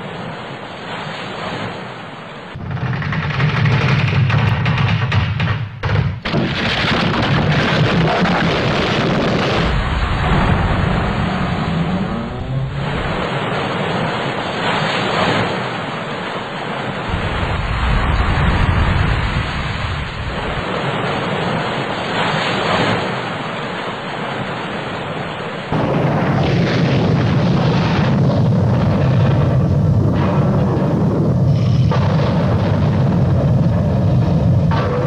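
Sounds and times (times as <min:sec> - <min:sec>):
wind buffeting microphone: 0:17.1 - 0:21.7.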